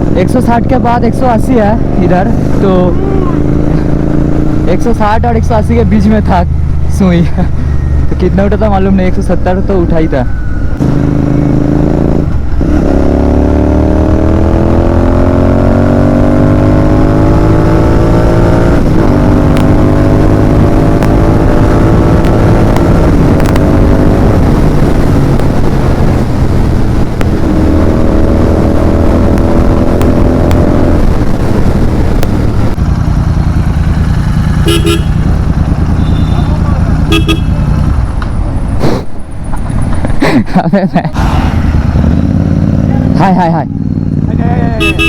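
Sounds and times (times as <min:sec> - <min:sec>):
motorcycle engine accelerating: 0:00.0 - 0:45.0
wind rush on microphone: 0:18.5 - 0:32.8
horn toots: 0:34.6 - 0:35.3, 0:35.9 - 0:37.8, 0:44.6 - 0:45.0.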